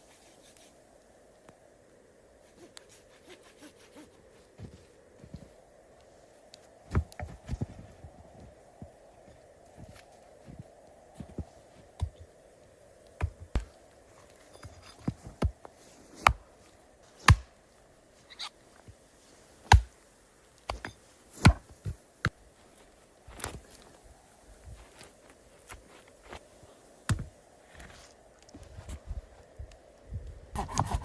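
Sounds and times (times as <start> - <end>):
sharp knocks and thuds: 27.1 - 27.3.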